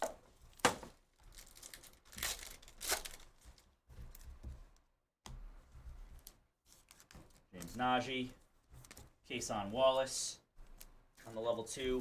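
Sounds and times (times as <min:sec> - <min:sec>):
packaging tearing and crinkling: 0:01.2 - 0:03.4.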